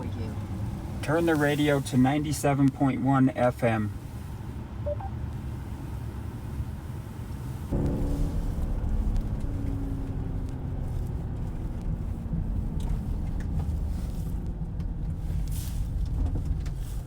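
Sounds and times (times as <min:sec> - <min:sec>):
road and tyre rumble: 0:00.0 - 0:17.0.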